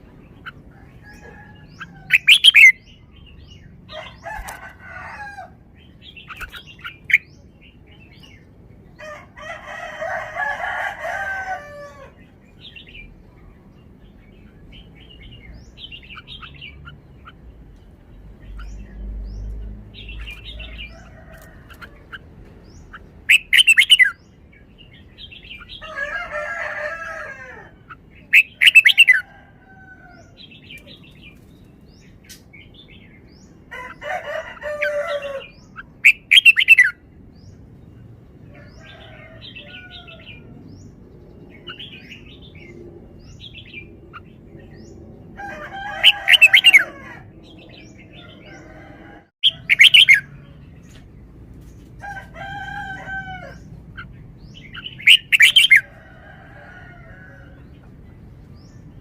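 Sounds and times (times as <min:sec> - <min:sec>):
bird chirps: 0:00.3 - 0:04.6.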